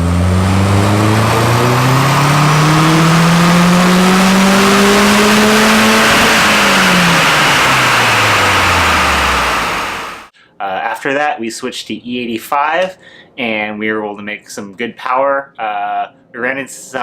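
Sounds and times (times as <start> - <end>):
car engine at full throttle: 0.0 - 10.3.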